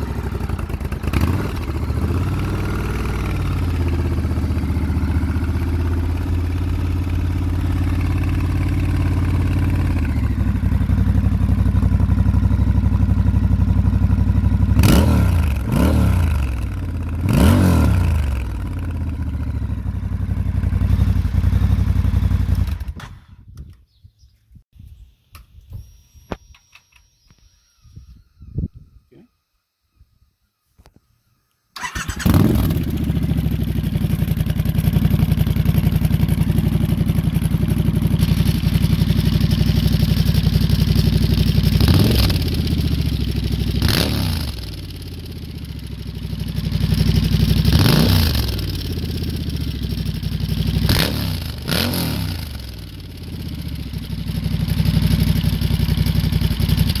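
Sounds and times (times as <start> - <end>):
engine revving: 0.0 - 23.0, 31.8 - 57.0
motorcycle engine idling: 0.0 - 23.0, 31.8 - 57.0
motorcycle engine starting: 0.0 - 23.6, 31.7 - 57.0.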